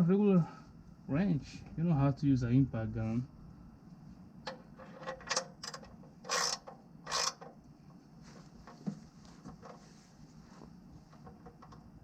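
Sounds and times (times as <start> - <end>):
ratchet wrench clicking: 5.2 - 7.5.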